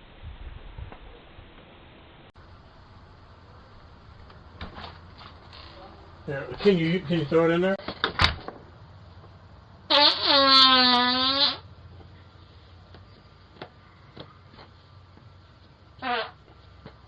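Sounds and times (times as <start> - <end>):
drawn-out pitched fart: 9.9 - 11.7, 16.0 - 16.4.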